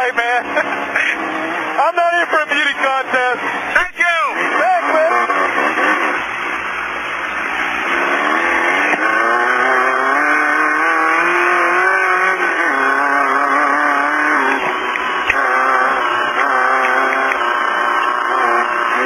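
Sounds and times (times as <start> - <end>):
race car engine running hard: 0.0 - 19.0.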